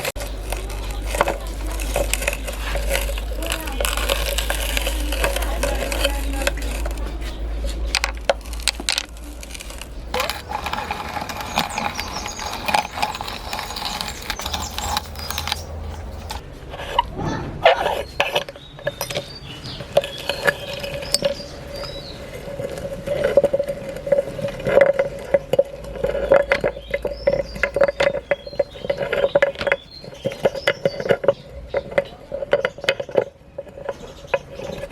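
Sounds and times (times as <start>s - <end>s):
meat grinder crushing hard candies: 0.0s - 7.2s, 7.8s - 16.4s.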